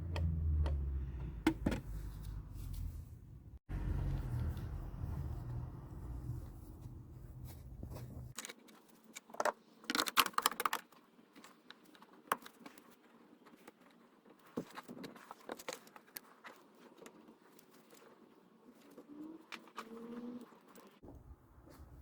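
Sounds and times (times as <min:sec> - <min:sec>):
low hum: 0:00.0 - 0:08.4.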